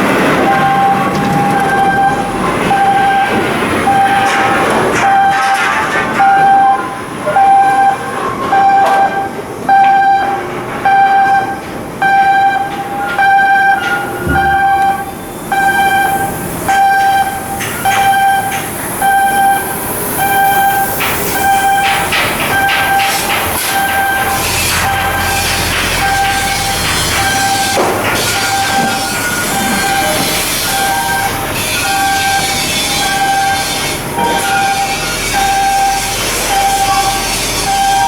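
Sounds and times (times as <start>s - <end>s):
electronic warning beeps: 0.3s - 5.6s, 6.2s - 38.0s
metallic knocks: 20.9s - 38.0s.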